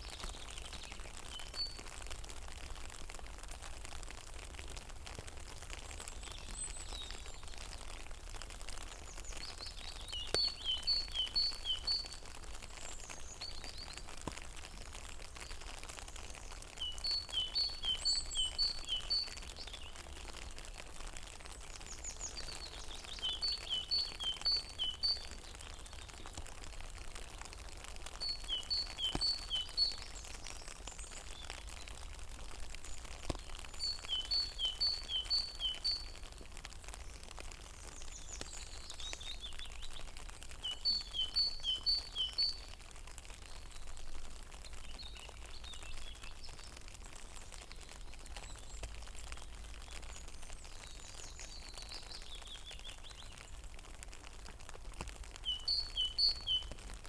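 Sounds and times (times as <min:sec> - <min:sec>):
rain hiss: 0:00.0 - 0:57.0
songbird singing: 0:06.0 - 0:07.8, 0:08.8 - 0:20.6, 0:21.5 - 0:26.4, 0:28.0 - 0:42.8, 0:43.4 - 0:53.7, 0:55.4 - 0:56.8.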